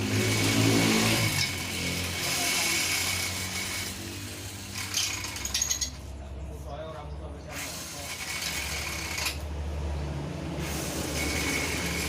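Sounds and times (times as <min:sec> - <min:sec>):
electric motor humming and whining: 0:00.0 - 0:04.9.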